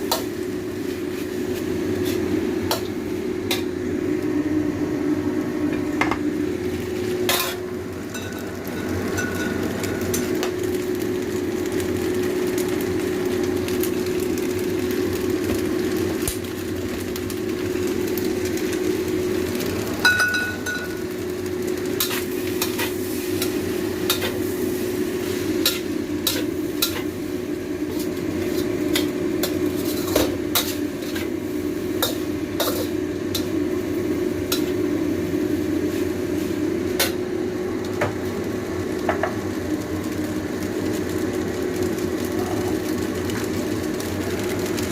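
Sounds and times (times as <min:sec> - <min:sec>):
steady hum: 0:00.0 - 0:11.2
noodles sizzling in a pan: 0:00.0 - 0:44.9.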